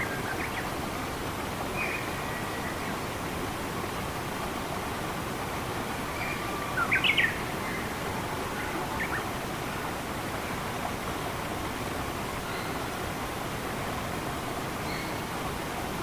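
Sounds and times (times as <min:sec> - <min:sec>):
rushing flowing water: 0:00.0 - 0:16.0.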